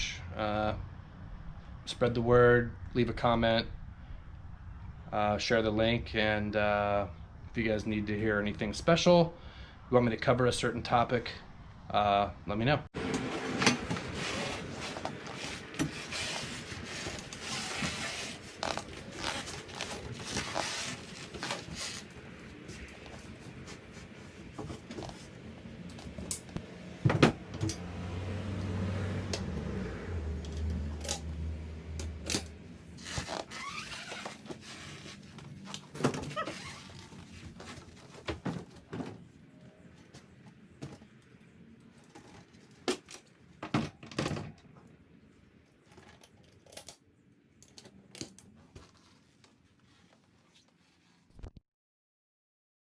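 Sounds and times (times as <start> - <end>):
knocks and clunks of handling: 13.0 - 25.3, 25.9 - 27.8, 32.0 - 39.3.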